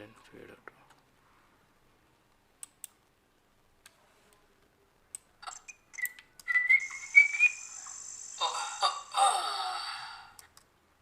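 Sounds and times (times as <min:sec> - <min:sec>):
high whistle rising in pitch: 0:06.5 - 0:08.4
high-pitched insect drone: 0:06.8 - 0:08.8.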